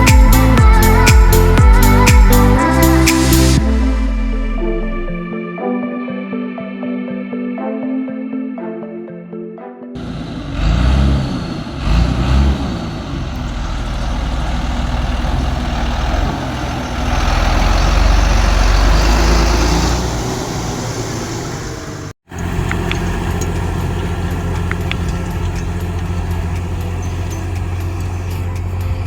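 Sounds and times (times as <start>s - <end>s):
tractor diesel engine under load: 10.0s - 29.0s.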